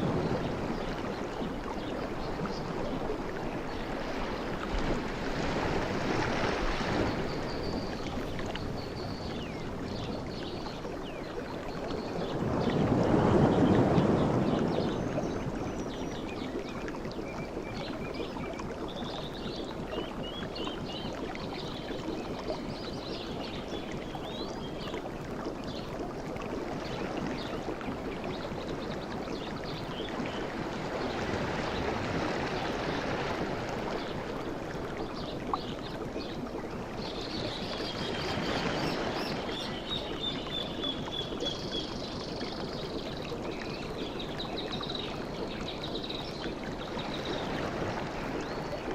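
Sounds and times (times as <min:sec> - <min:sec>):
sea surf washing: 0:12.4 - 0:14.7.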